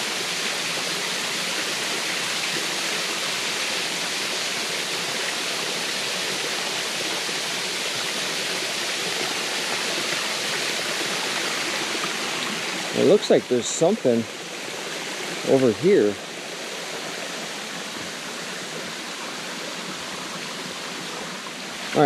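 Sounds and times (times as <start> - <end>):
waterfall rushing and splashing: 0.0 - 22.0.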